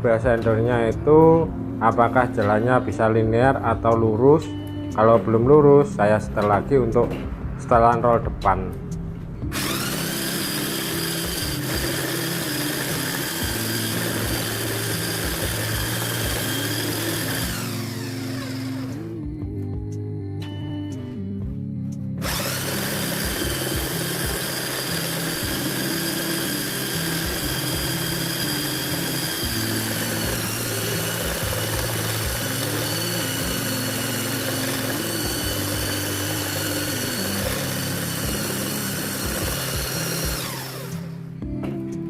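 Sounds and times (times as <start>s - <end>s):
belt sander whining: 9.4s - 19.2s, 22.2s - 41.4s.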